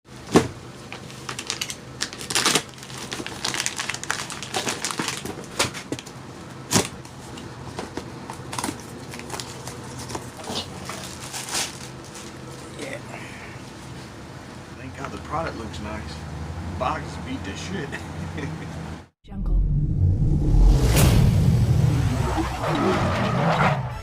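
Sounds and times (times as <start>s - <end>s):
cardboard packaging clicks and rustles: 0.2s - 12.6s.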